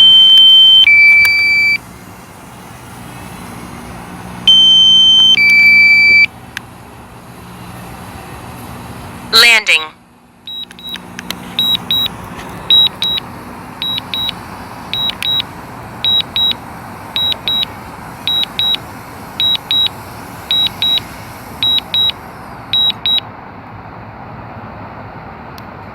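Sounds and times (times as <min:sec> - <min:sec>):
short high-pitched beeps: 0:00.0 - 0:01.8, 0:04.5 - 0:06.3, 0:10.5 - 0:11.0, 0:11.6 - 0:16.6, 0:17.2 - 0:17.7, 0:18.3 - 0:18.8, 0:19.4 - 0:19.9, 0:20.5 - 0:22.2, 0:22.8 - 0:23.2
steady hiss: 0:00.6 - 0:23.0.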